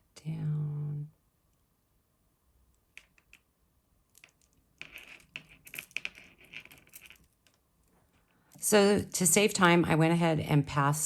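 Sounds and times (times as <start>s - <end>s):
glass beads clicking: 4.1s - 7.6s.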